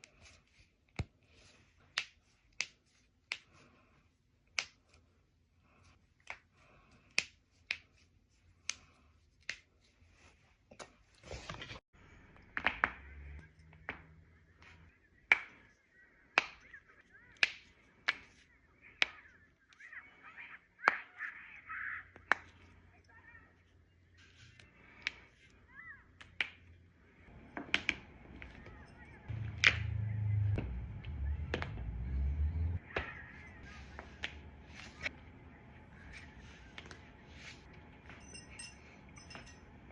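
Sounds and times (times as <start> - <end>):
rustling scuffle: 11.0 - 11.8
low rumble: 27.3 - 36.6.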